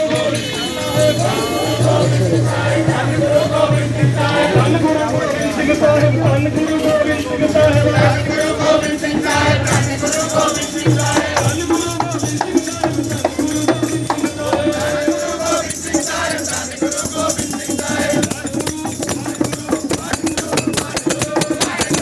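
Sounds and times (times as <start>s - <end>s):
sustained melodic tones: 0.0s - 11.9s
drum beat: 0.0s - 22.0s
jingling hand percussion: 0.0s - 22.0s.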